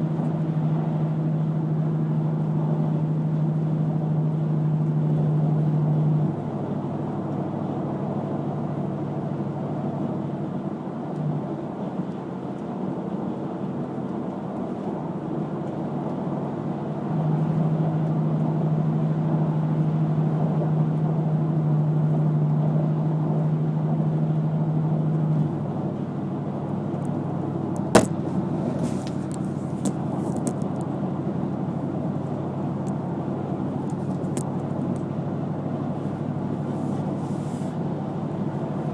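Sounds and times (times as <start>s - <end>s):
car road and tyre noise: 23.9s - 38.9s.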